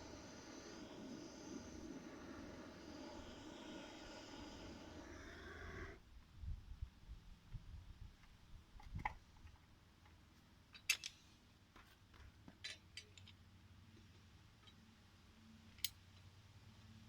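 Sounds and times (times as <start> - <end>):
faint low hum: 0.0 - 10.0.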